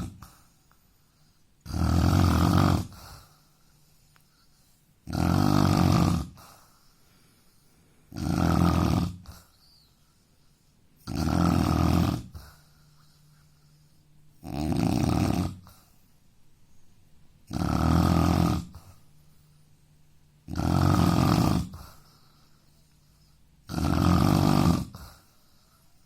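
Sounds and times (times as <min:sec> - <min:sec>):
man snoring: 0:00.0 - 0:00.3, 0:01.6 - 0:03.2, 0:05.1 - 0:06.5, 0:08.1 - 0:09.4, 0:11.0 - 0:12.4, 0:14.4 - 0:15.7, 0:17.5 - 0:18.9, 0:20.5 - 0:22.0, 0:23.6 - 0:25.2.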